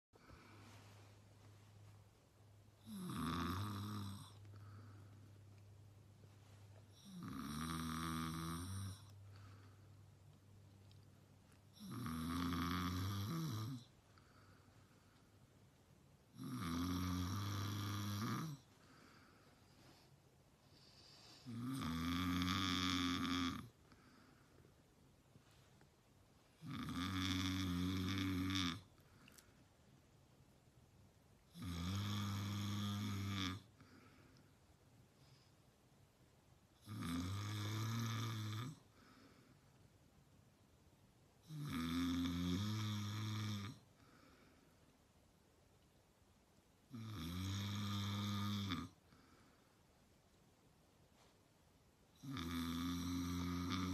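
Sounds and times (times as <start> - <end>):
man snoring loudly: 2.8 - 4.4, 7.0 - 9.1, 11.8 - 13.9, 16.4 - 18.6, 21.5 - 23.7, 26.6 - 28.8, 31.5 - 33.7, 36.8 - 38.8, 41.4 - 43.8, 46.9 - 49.0, 52.2 - 53.9.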